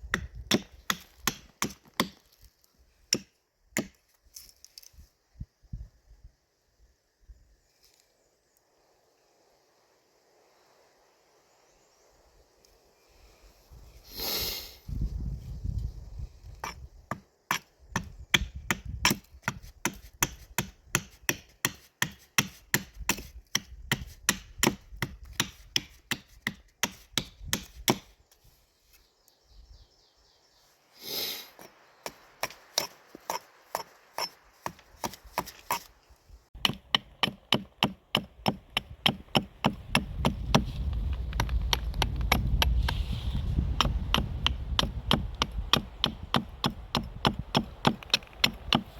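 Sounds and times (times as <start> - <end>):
axe chopping wood: 0.0 - 2.3, 3.1 - 4.0, 16.6 - 28.1, 36.6 - 42.8, 43.8 - 48.9.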